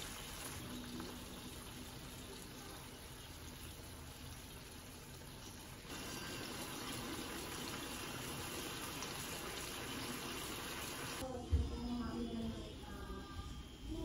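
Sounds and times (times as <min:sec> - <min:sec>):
water running from a tap: 0:00.0 - 0:11.2.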